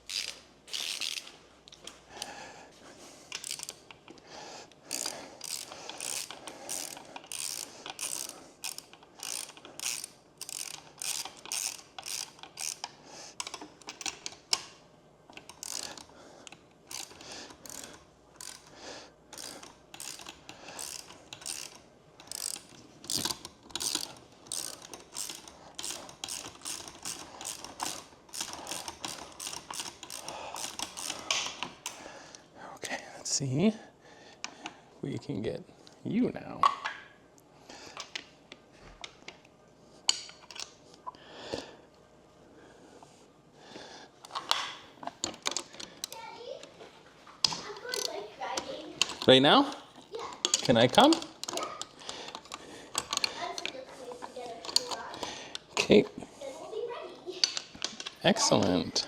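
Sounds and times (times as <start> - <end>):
ratchet wrench clicking: 0.0 - 1.2, 3.3 - 4.0, 4.9 - 14.7, 15.3 - 32.0, 47.9 - 49.8, 50.4 - 53.7, 54.6 - 55.7.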